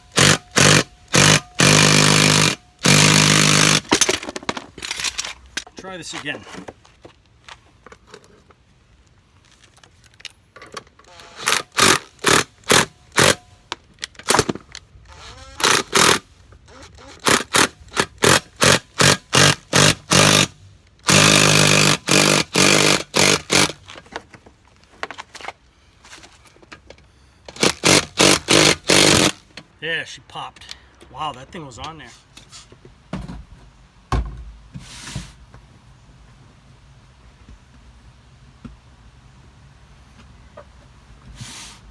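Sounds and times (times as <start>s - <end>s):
power tool spinning jack screw: 0.0s - 5.3s, 11.0s - 13.4s, 14.2s - 23.8s, 27.5s - 29.4s.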